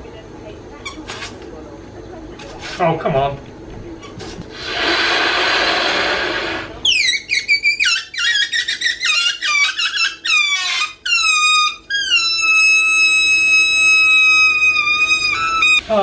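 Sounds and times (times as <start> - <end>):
hiss burst: 4.5 - 6.8
high-pitched squealing: 4.6 - 16.0.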